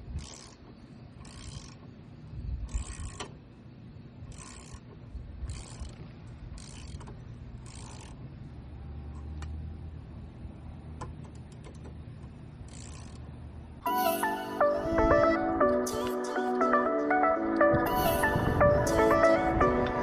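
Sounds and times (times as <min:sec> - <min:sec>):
ratchet wrench clicking: 0:00.1 - 0:02.0, 0:02.6 - 0:03.4, 0:04.2 - 0:08.4, 0:11.0 - 0:13.5.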